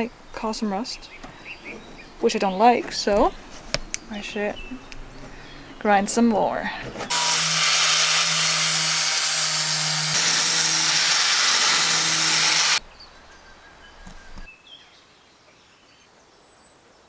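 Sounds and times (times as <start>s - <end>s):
angle grinder grinding metal: 6.9s - 12.8s.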